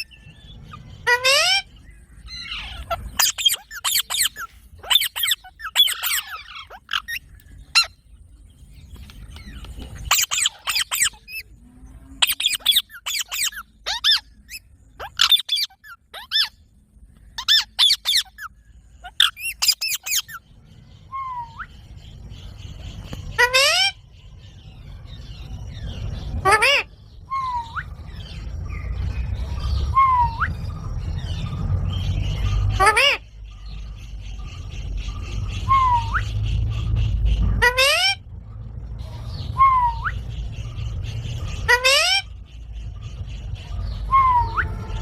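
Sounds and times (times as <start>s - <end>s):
parakeet screeching: 0.0s - 8.0s, 10.0s - 11.5s, 12.2s - 16.6s, 17.4s - 20.4s, 23.3s - 24.0s, 35.5s - 38.2s, 41.5s - 42.4s.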